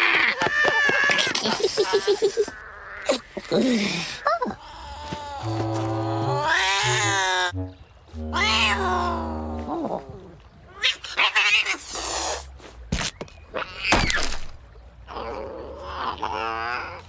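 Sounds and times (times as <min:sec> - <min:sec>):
cartoon cat yowling and meowing: 0:08.3 - 0:09.2.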